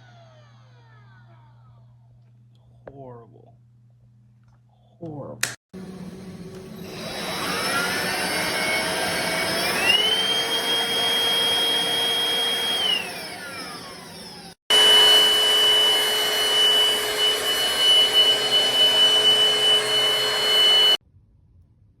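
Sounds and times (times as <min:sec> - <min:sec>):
stick vacuum motor whine: 0:05.8 - 0:21.0.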